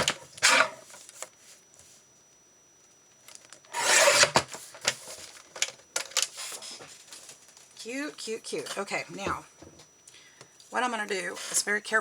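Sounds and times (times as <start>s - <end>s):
card rasping rub: 3.8s - 4.4s.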